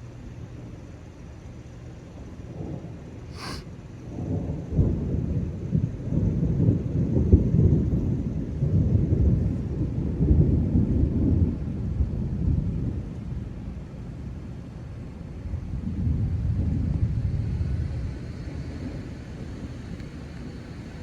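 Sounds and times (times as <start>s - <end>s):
rolling thunder: 2.2s - 3.3s, 3.9s - 21.0s.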